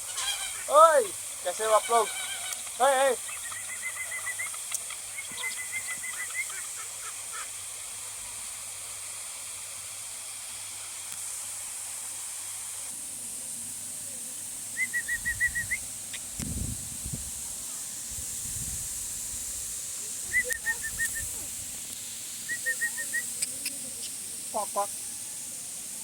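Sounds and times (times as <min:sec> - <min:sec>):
birds calling rapid high notes: 0:00.0 - 0:07.5
steady high-pitched hiss: 0:00.0 - 0:26.0.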